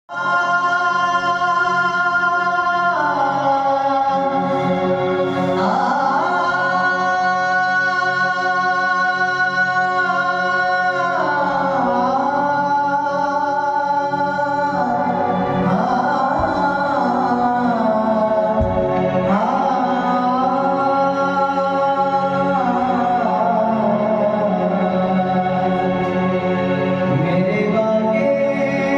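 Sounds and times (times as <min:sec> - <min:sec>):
man singing long held notes: 0:00.1 - 0:28.9
steady drone: 0:14.1 - 0:28.9.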